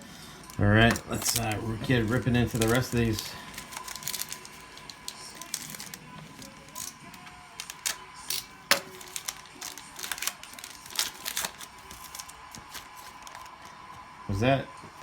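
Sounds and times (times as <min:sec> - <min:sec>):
foil wrappers crinkling and tearing: 0:00.0 - 0:13.9
cards being handled: 0:00.4 - 0:14.0.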